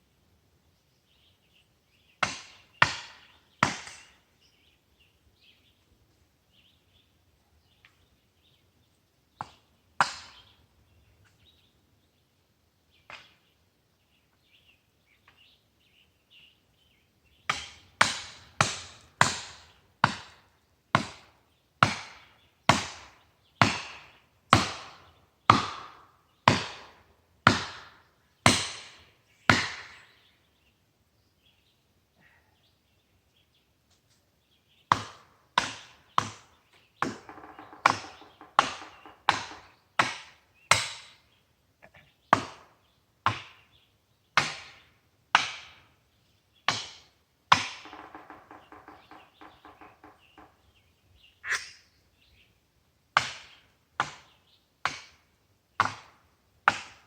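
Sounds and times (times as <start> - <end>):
faint bird chirps: 48.5 - 52.6.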